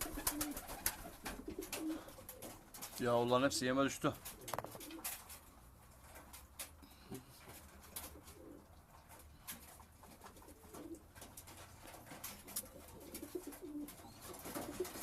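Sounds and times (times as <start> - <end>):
pigeons cooing: 0.0 - 2.8, 4.2 - 5.3, 7.7 - 11.6, 12.2 - 15.0.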